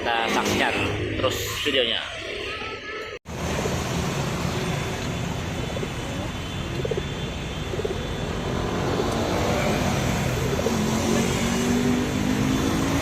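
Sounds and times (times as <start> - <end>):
traffic noise: 0.0 - 13.0
bus engine passing: 7.6 - 13.0.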